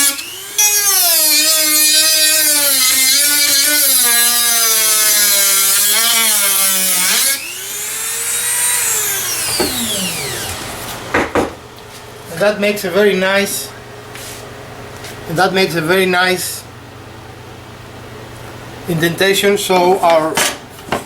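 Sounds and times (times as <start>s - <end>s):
motor winding down whine: 0.0s - 2.7s, 7.4s - 11.2s
rotary tool grinding: 0.0s - 11.1s.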